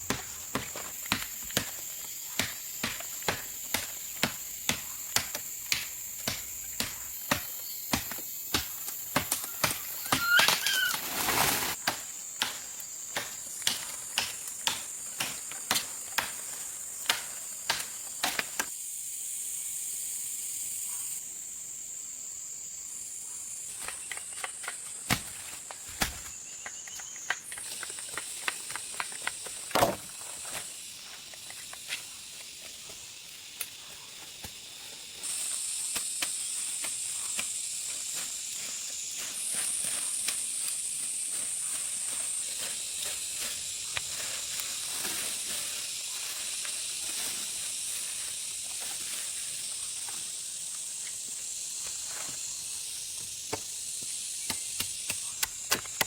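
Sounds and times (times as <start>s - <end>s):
insects droning: 0.0s - 56.0s.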